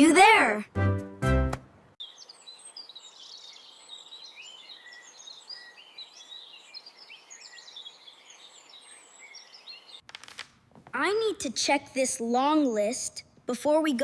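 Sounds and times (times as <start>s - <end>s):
small birds chirping: 2.0s - 10.1s.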